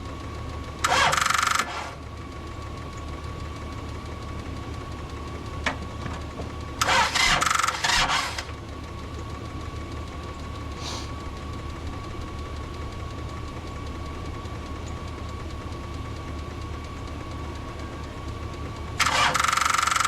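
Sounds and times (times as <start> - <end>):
engine idling: 0.0 - 20.0
thin steady whine: 0.0 - 20.0
harsh noisy bursts: 6.8 - 8.5, 19.0 - 20.0.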